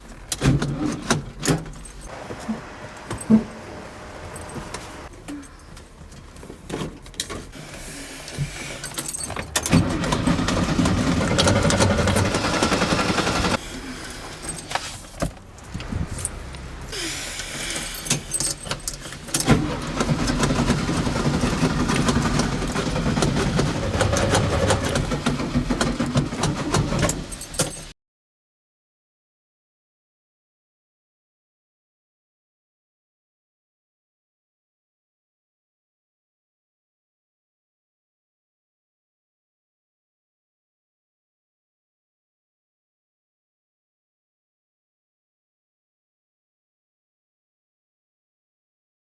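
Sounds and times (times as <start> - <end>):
keys jangling in ignition: 0.3 - 2.2, 4.2 - 5.8, 8.8 - 10.6, 14.2 - 19.8, 26.6 - 27.9
engine starter cranking: 8.3 - 27.9.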